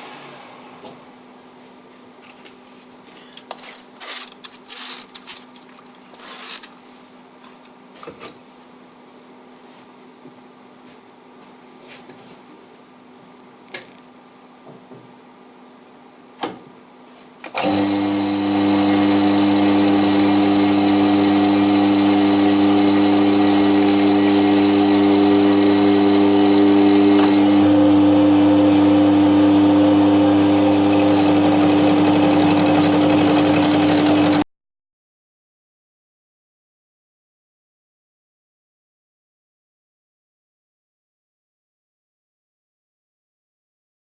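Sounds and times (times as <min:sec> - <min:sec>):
milling machine running: 0:17.5 - 0:34.4.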